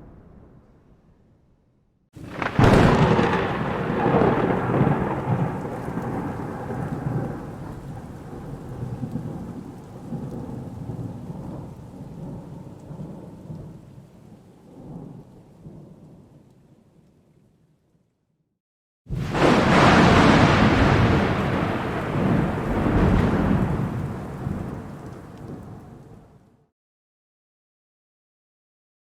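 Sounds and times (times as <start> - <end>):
thunder rumbling: 0.0 - 1.3, 2.2 - 16.4, 19.1 - 26.5.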